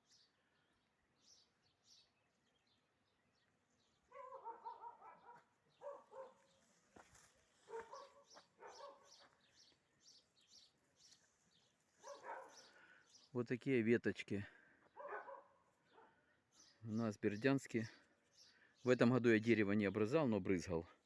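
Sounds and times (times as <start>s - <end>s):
small birds chirping: 0.0s - 21.0s
faint dog barking: 4.1s - 6.6s, 7.6s - 9.3s, 12.0s - 12.9s, 14.9s - 16.3s.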